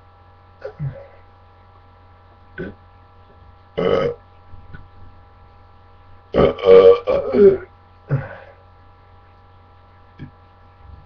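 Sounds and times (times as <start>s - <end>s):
man burping: 0.6s - 1.2s, 2.6s - 2.8s, 3.8s - 4.2s, 6.3s - 8.6s.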